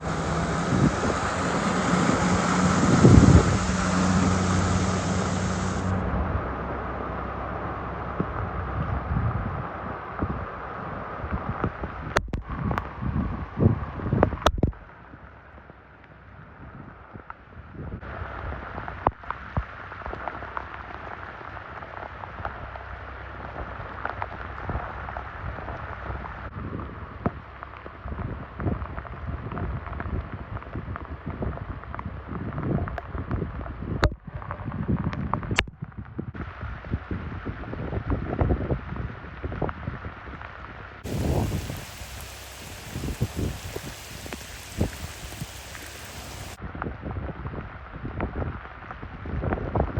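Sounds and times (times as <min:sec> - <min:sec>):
heavy rain falling: 0:00.0 - 0:06.5, 0:41.0 - 0:46.6
wind on microphone: 0:00.0 - 0:06.9, 0:08.0 - 0:15.3, 0:24.6 - 0:49.9
low engine hum: 0:00.0 - 0:15.8, 0:41.0 - 0:46.6
rain and rushing water: 0:00.0 - 0:16.4, 0:18.0 - 0:26.6, 0:36.3 - 0:46.6.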